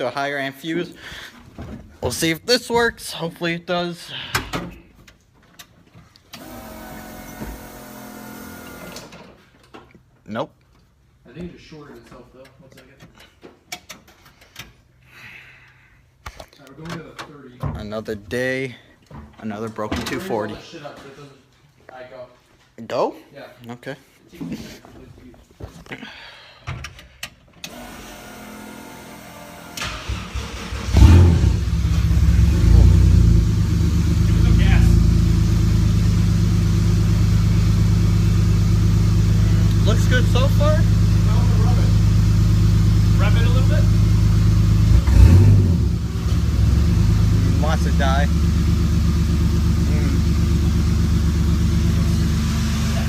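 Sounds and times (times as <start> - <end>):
car engine running loudly: 31.0 - 53.0.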